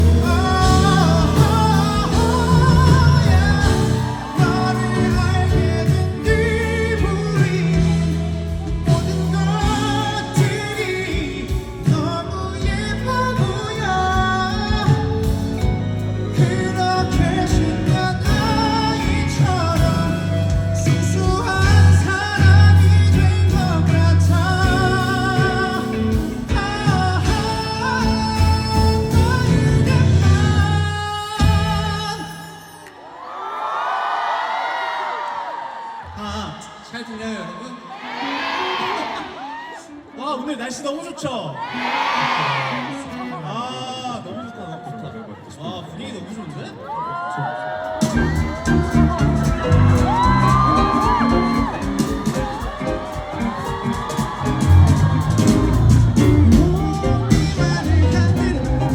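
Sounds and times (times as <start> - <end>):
band accompaniment: 0.0 - 33.0, 47.8 - 58.9
man singing with vibrato: 0.0 - 33.2, 47.5 - 58.9.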